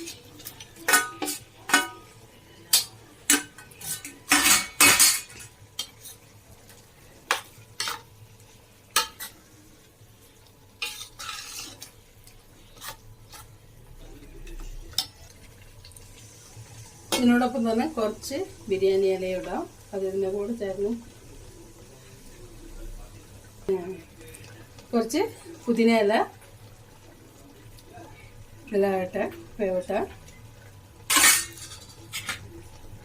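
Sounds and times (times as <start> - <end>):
spoon scraping a cooking pot: 0.0 - 2.1, 2.7 - 6.3, 10.8 - 12.0, 12.6 - 13.5.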